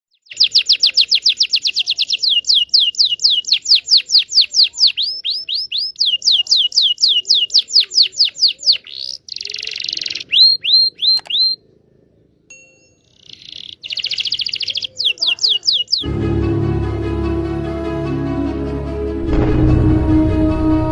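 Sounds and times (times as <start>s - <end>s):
canary singing: 0.1s - 12.2s, 12.9s - 16.1s.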